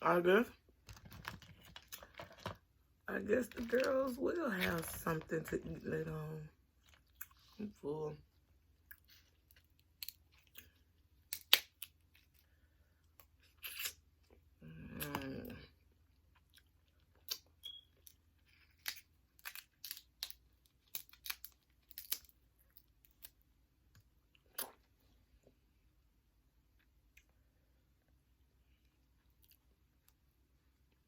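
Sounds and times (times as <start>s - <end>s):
shellfish cracking: 0.8s - 2.5s, 9.5s - 12.4s, 18.5s - 23.4s
person chewing: 6.7s - 7.6s, 8.8s - 25.6s.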